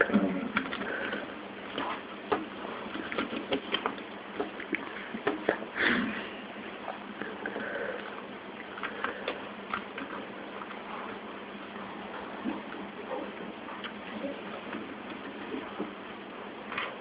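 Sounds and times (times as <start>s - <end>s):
person sniffing: 5.8s - 6.4s.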